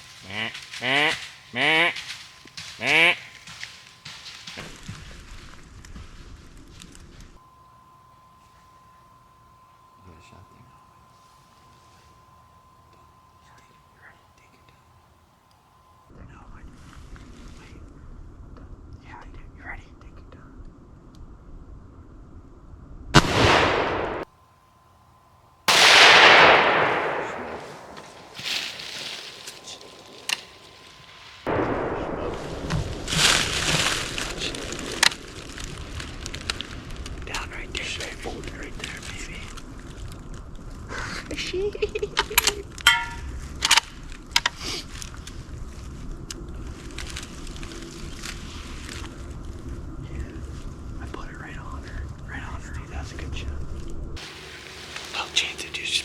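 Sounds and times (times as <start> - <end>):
gunshot echo: 23.2 - 24.3, 25.7 - 28.8, 31.5 - 34.5
rifle shots: 23.2 - 24.3, 25.7 - 28.4
short metallic ring: 42.8 - 43.3.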